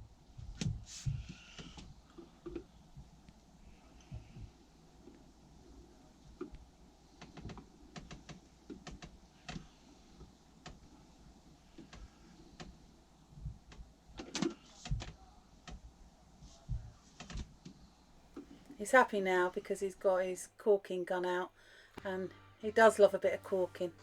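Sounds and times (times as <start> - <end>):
soft low thumps: 4.1 - 4.6.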